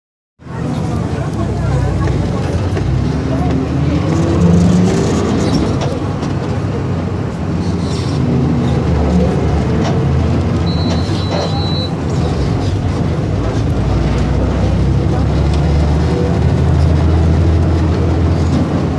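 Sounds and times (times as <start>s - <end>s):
bus diesel engine running: 0.4s - 18.9s
short high beep: 10.7s - 12.0s.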